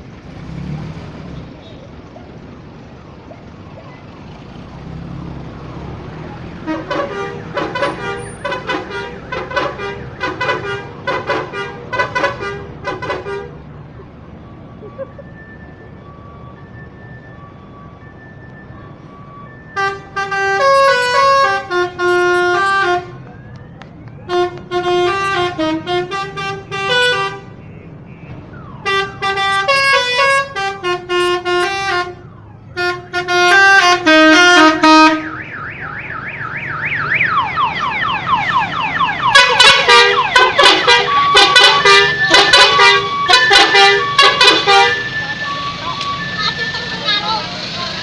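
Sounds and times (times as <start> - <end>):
musical bus horn melody: 6.6 - 13.7, 19.3 - 23.2, 24.3 - 35.4, 39.2 - 47.5
siren-like rising and falling wail: 13.1 - 27.6, 28.2 - 30.6, 31.6 - 32.8, 33.5 - 48.0.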